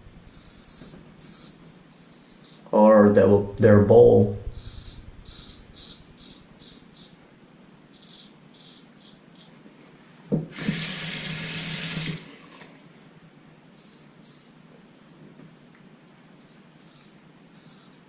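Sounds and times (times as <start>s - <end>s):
tap knock: 10.3s - 10.5s
water tap running: 10.5s - 12.8s.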